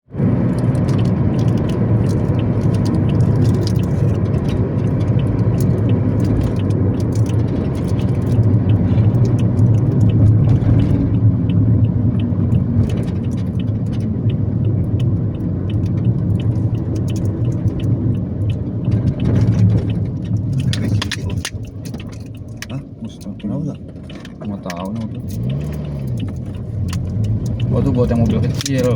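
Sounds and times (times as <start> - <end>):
road noise: 0.0 - 28.9
vehicle engine rumbling: 0.0 - 28.9.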